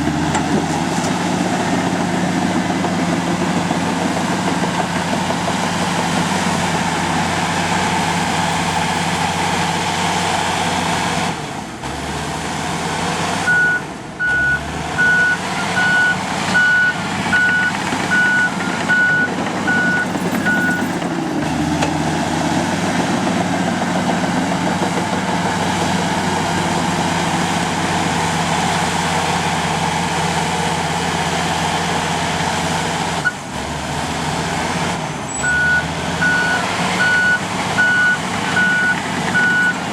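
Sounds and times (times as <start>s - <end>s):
bulldozer diesel engine running: 0.0s - 39.9s
reverse alarm beeping: 13.5s - 20.8s, 35.4s - 39.8s.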